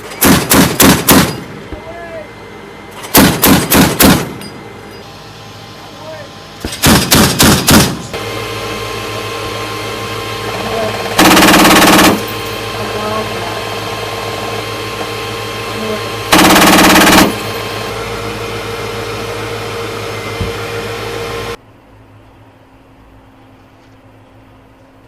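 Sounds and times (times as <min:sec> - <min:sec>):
chain gun firing: 0:00.0 - 0:01.5, 0:03.0 - 0:04.4, 0:06.7 - 0:08.0, 0:11.2 - 0:12.3, 0:16.3 - 0:17.4
vehicle hum: 0:00.0 - 0:25.0.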